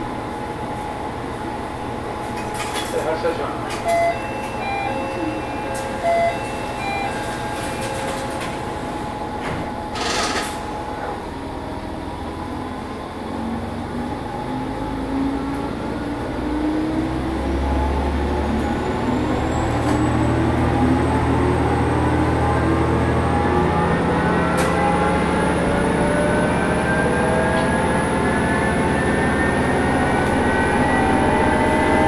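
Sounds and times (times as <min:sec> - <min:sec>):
short beeps: 0:03.8 - 0:08.2.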